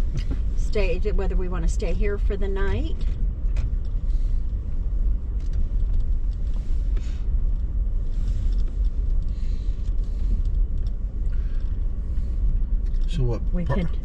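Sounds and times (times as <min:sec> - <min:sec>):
truck engine and road rumble: 0:00.0 - 0:14.0
faint clicks and rattles: 0:02.6 - 0:13.2.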